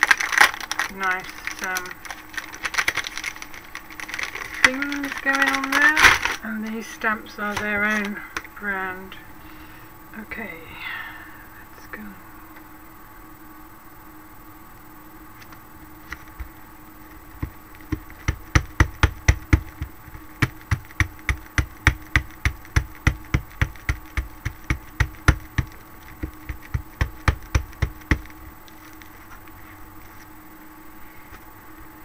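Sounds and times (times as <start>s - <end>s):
rubber stamp knocking: 17.4s - 28.4s.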